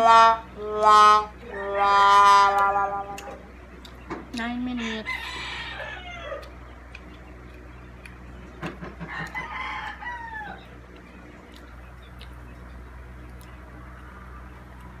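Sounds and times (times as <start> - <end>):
rooster crowing: 0.0 - 3.1, 4.8 - 6.5, 8.9 - 10.8
steady low hum: 0.0 - 15.0.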